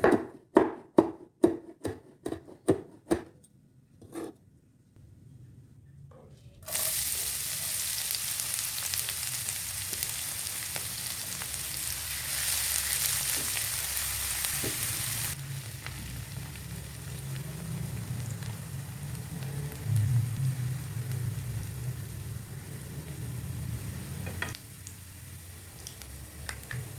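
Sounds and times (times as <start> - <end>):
food sizzling in hot oil: 6.6 - 26.9.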